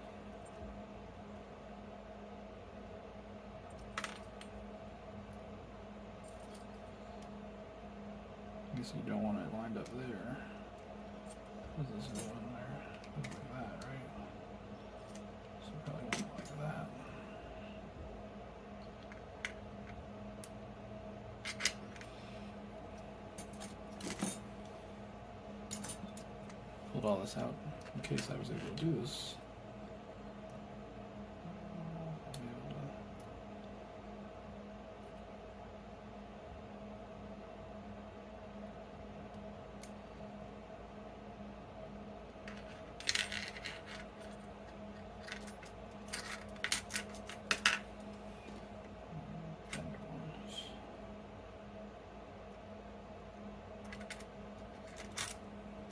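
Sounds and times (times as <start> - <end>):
steady low hum: 0.0 - 55.9
metal lock parts clinking: 21.4 - 22.1, 23.4 - 24.6, 25.7 - 26.6, 42.5 - 48.1, 53.9 - 55.5.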